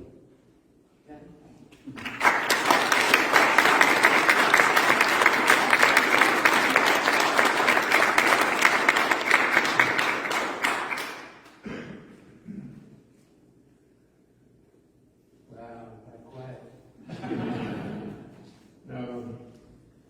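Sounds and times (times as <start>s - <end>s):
audience applauding: 1.9s - 11.6s.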